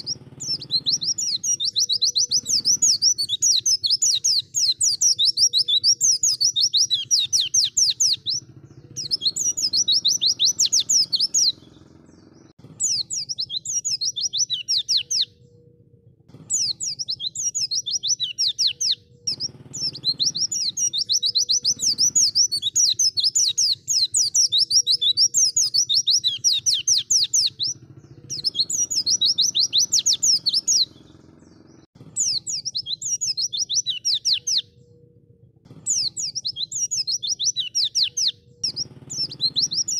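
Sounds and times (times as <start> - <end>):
bird chattering trills: 0.0 - 39.9.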